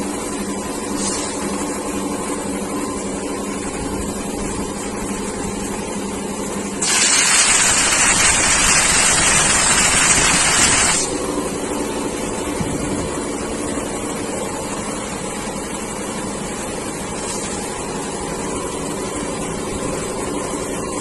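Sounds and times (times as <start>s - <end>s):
air compressor humming: 0.0s - 21.0s
compressed air hissing: 0.9s - 1.5s, 6.8s - 11.2s.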